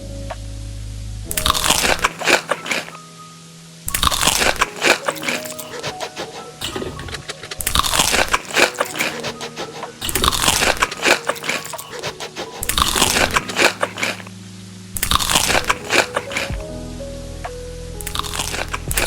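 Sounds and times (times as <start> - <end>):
crunchy food being chewed: 1.3 - 3.0, 3.9 - 14.3, 15.0 - 16.6, 18.1 - 19.0.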